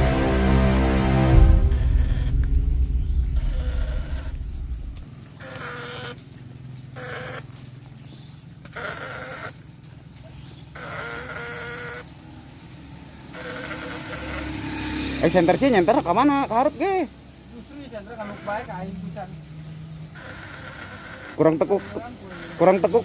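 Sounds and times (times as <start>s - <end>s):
steady low background: 0.0s - 5.2s
animal bleating: 13.3s - 14.4s, 18.1s - 18.9s, 20.1s - 23.0s.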